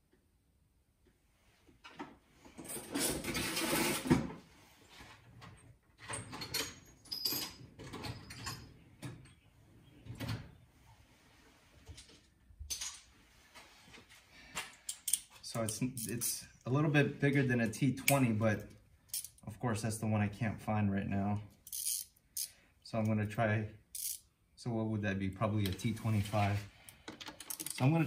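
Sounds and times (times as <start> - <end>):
tools rustling and clattering: 1.8 - 9.4, 11.8 - 16.3, 18.1 - 19.4, 25.7 - 28.0.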